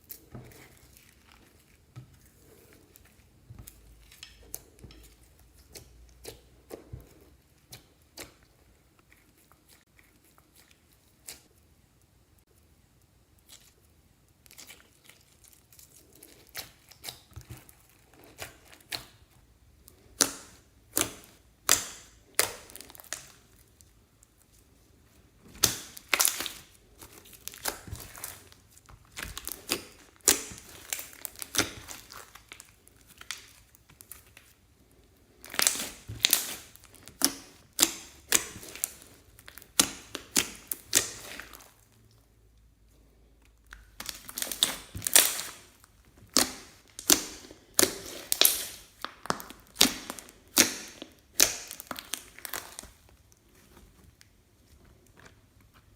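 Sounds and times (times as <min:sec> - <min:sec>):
slime popping and crackling: 0:19.9 - 0:24.5, 0:25.4 - 0:34.5, 0:35.4 - 0:42.1, 0:43.7 - 0:53.4.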